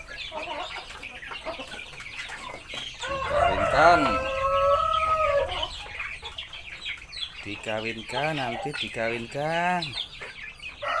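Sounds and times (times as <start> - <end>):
hens clucking: 0.0 - 11.0
rooster crowing: 3.0 - 5.8.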